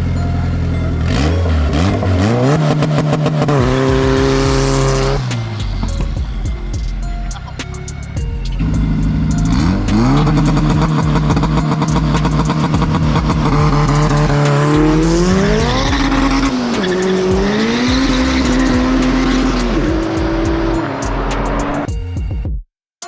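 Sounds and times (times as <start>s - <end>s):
car engine revving hard: 0.0s - 21.9s.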